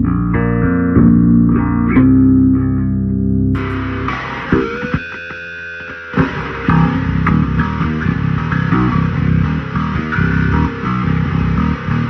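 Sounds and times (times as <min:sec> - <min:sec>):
distorted electric guitar metal: 0:03.6 - 0:12.0.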